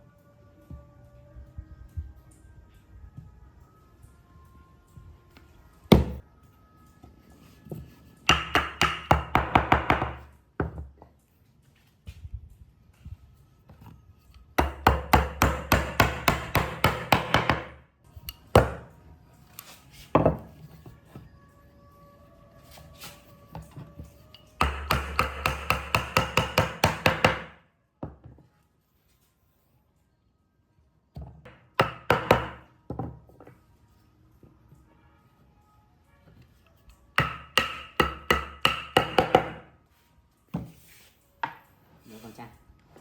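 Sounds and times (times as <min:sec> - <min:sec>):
rapid hammering on wood: 0:08.3 - 0:10.3, 0:14.6 - 0:17.8, 0:24.6 - 0:27.6, 0:31.8 - 0:32.6, 0:37.2 - 0:39.6.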